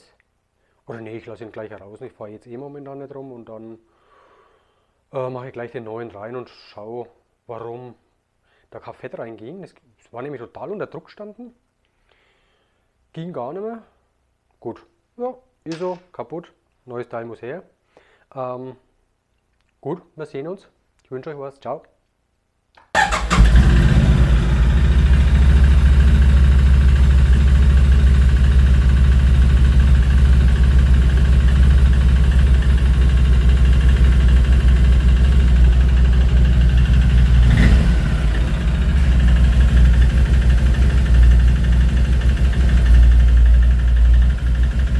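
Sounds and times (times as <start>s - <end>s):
atv engine idling: 23.0s - 44.9s.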